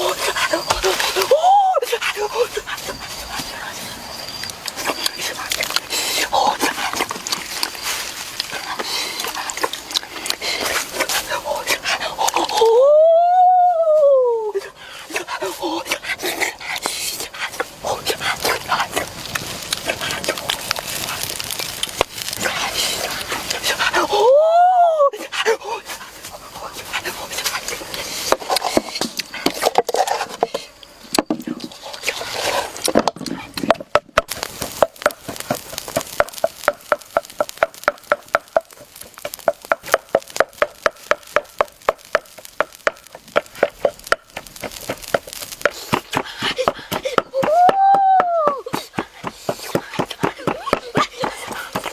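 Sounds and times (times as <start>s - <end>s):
wet chewing and smacking: 1.9s - 12.6s, 15.2s - 24.1s.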